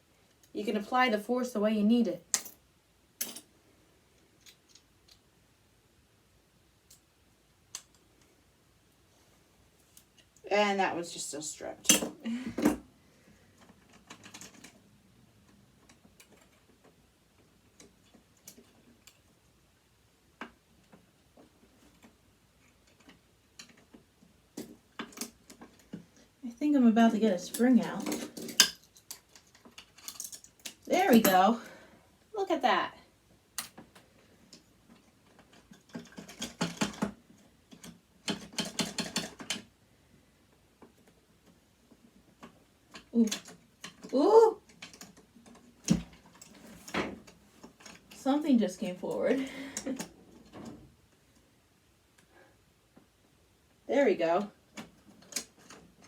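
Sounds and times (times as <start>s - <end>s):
sewing machine parts clicking: 34.5s - 39.7s.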